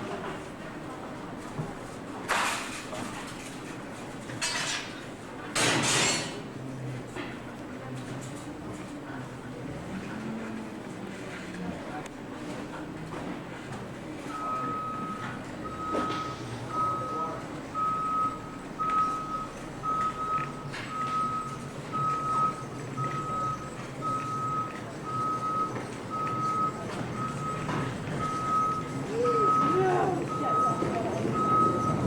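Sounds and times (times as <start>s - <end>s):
engine running low: 9.6s - 32.0s
reversing alarm beeping: 14.3s - 32.0s.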